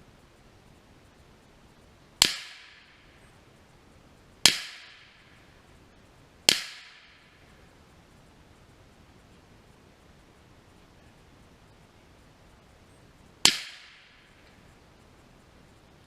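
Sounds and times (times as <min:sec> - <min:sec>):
rifle shots: 0:13.4 - 0:14.1.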